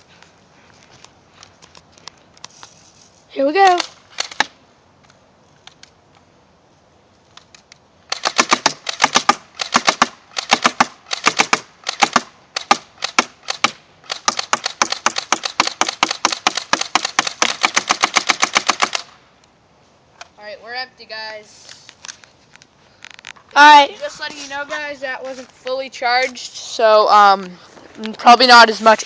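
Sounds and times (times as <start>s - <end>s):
airsoft gun firing bursts: 8.1s - 19.1s.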